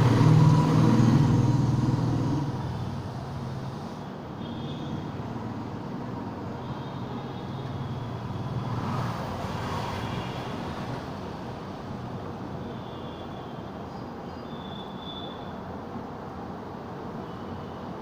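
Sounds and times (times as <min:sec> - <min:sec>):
vehicle passing: 0:00.0 - 0:04.0
road traffic noise: 0:00.0 - 0:18.0.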